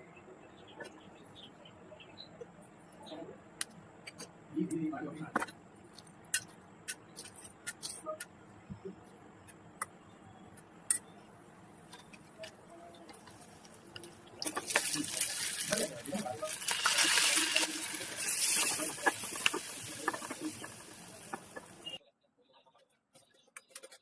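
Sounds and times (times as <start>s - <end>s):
loud cooking hiss: 14.4s - 22.0s.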